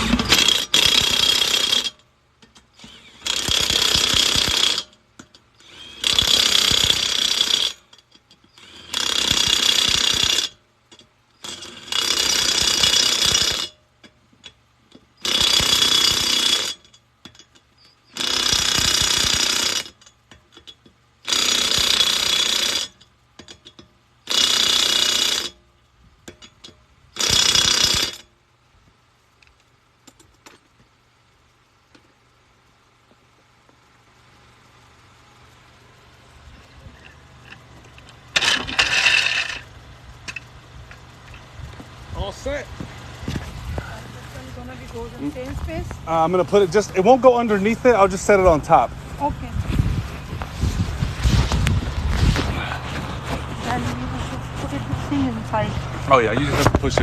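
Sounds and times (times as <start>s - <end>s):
impact wrench hammering: 0.0s - 25.6s.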